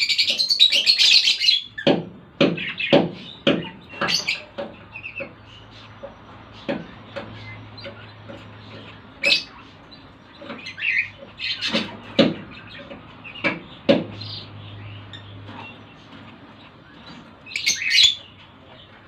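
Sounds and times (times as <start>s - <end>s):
lovebirds chirping and squeaking: 0.0s - 19.0s.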